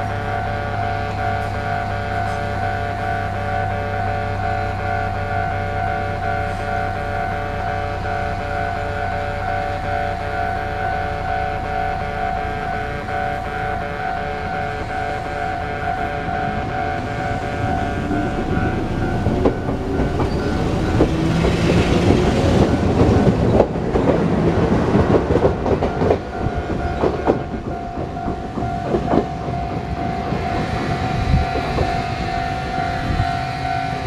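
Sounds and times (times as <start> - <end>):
level-crossing alarm tone: 0.0 - 34.0
train wheels clattering over rails: 14.2 - 34.0.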